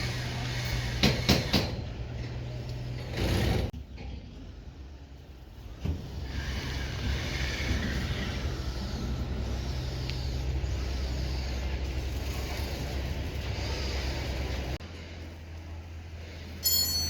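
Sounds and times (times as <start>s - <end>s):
diesel engine running: 4.4s - 16.6s.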